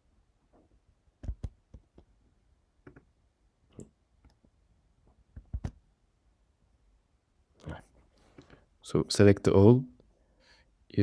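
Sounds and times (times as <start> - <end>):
mouse and keyboard clicks: 1.2 - 1.8, 5.3 - 5.8.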